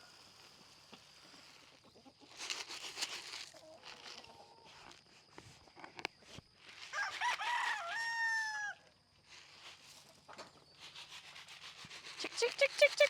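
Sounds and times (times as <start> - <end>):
rooster crowing: 6.9 - 8.8.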